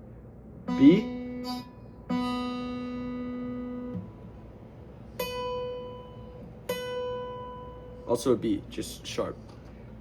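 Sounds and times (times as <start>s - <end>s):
acoustic guitar string plucked: 0.7s - 4.4s, 5.1s - 8.0s.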